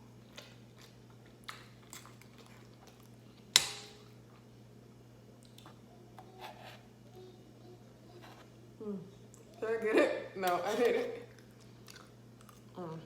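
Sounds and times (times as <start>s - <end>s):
chewing and squishy mouth noises: 0.2s - 3.4s, 11.2s - 13.0s.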